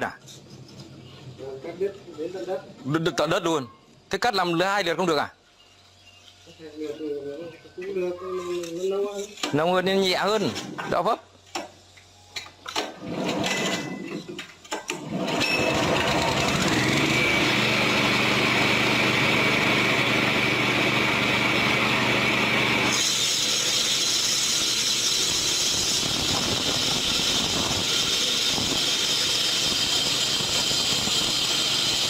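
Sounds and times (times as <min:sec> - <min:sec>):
concrete saw engine running: 0:15.0 - 0:32.0
saw blade cutting concrete: 0:15.0 - 0:32.0.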